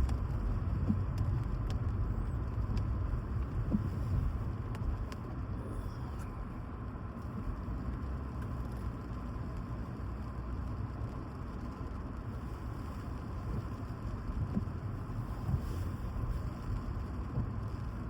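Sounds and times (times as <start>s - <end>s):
faint ticks: 0.0s - 5.3s
car driving on wet road: 0.0s - 18.0s.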